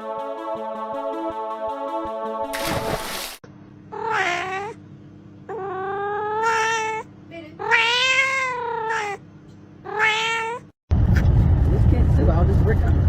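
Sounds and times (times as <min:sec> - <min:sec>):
cat meowing: 0:03.9 - 0:04.8, 0:05.5 - 0:09.2, 0:09.8 - 0:10.7.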